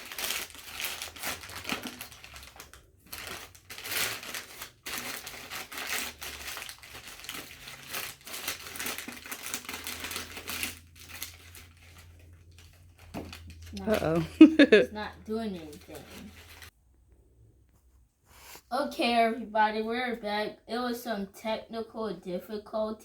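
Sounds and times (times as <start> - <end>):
paper bag crumpling: 0.0 - 13.7.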